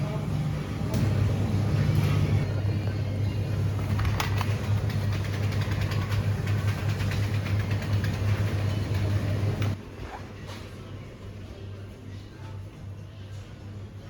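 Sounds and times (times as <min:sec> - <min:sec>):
vehicle engine humming: 0:00.0 - 0:09.8.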